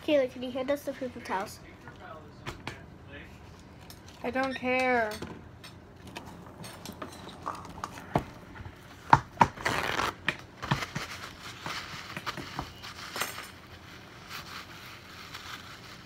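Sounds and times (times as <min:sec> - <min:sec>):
paper rustling tear: 0:09.6 - 0:16.0
paper towels crumpling: 0:09.6 - 0:16.0.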